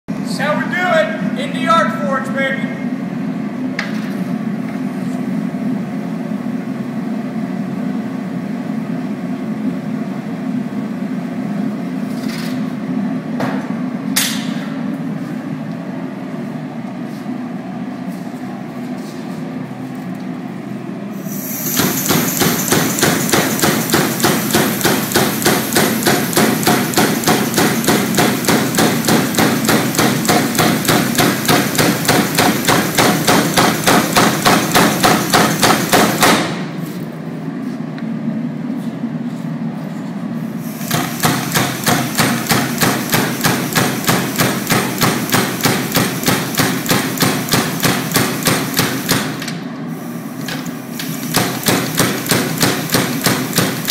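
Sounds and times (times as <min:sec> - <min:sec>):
power hammer pounding steel: 0:21.8 - 0:36.6, 0:40.9 - 0:49.4, 0:51.2 - 0:53.9.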